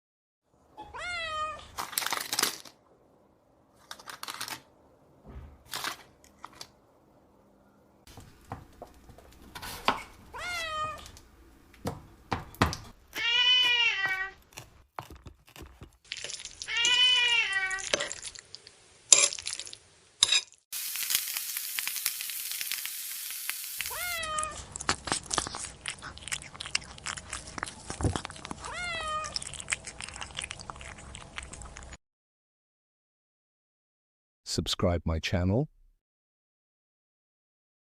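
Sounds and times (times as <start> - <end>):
cat meowing: 0.8 - 1.8, 10.3 - 11.2, 13.1 - 14.4, 16.6 - 18.0, 23.8 - 24.7, 28.5 - 29.4.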